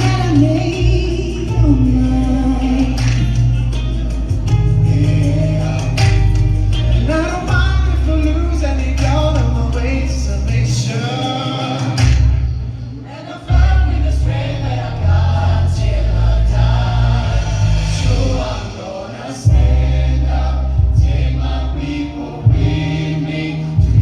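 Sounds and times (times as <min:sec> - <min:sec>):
instrumental accompaniment with bass: 0:00.0 - 0:24.0
choir singing: 0:12.9 - 0:24.0.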